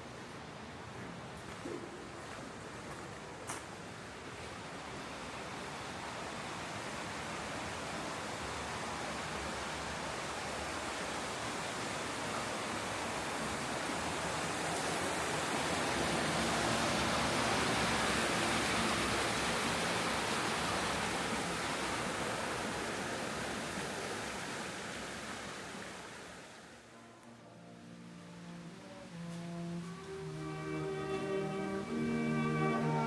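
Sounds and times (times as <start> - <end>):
water rushing: 0.0 - 33.0.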